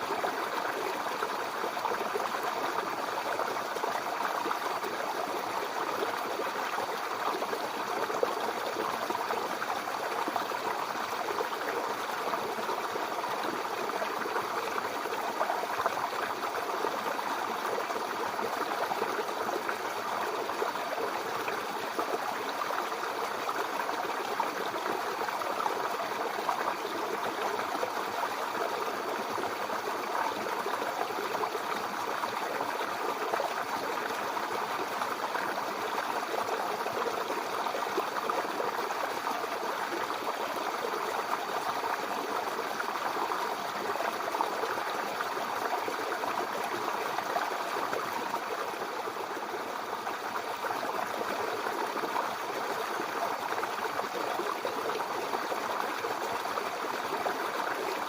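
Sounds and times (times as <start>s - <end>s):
brook babbling over stones: 0.0s - 58.0s.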